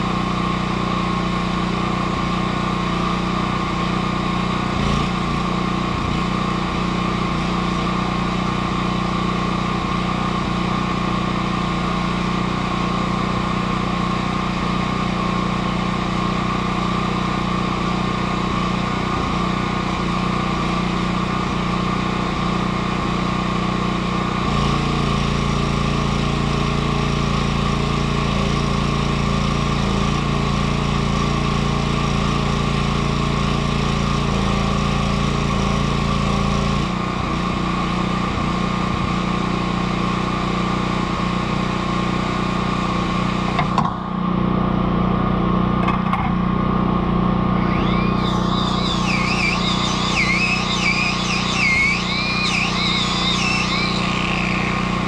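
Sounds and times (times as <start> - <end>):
power tool motor running: 47.4 - 55.0.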